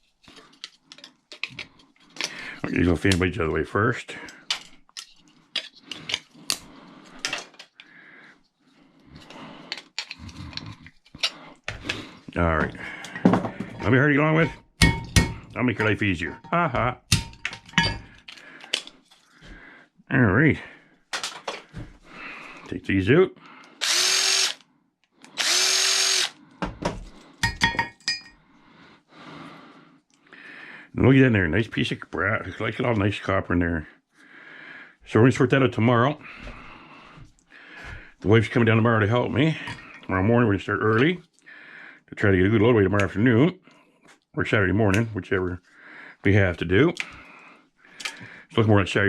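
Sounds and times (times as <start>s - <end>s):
hand tools clinking on metal: 12.6s - 18.8s
power drill whine: 23.8s - 24.6s, 25.4s - 26.4s.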